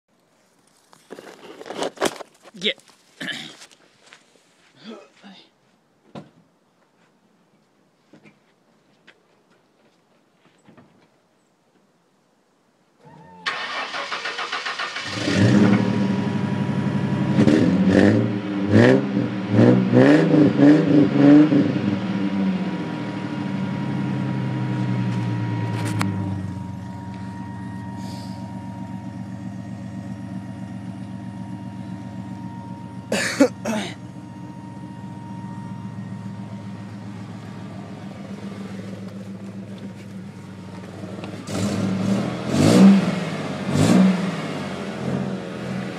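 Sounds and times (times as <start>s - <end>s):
car engine starting: 13.0s - 45.9s
car engine idling: 13.5s - 17.4s, 22.0s - 45.9s
car engine revving: 13.5s - 45.9s.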